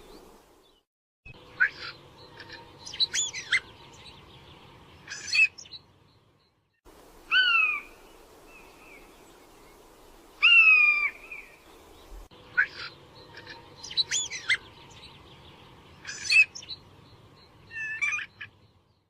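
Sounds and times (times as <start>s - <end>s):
birds chirping: 0.0s - 19.0s
drawn-out downslurred bird calls: 1.5s - 4.2s, 7.3s - 9.8s, 10.4s - 18.7s.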